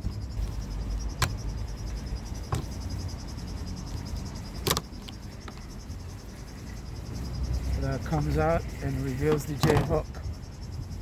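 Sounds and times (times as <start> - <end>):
crickets chirring: 0.0 - 11.0
sharp plastic clicks: 1.1 - 1.4, 4.6 - 5.6.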